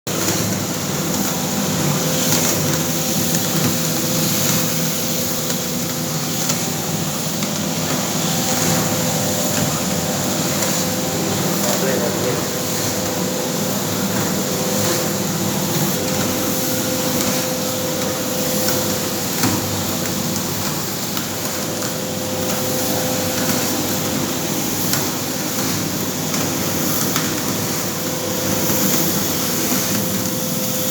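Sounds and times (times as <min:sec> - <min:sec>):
coffee roasting machine whirring: 0:00.1 - 0:30.9.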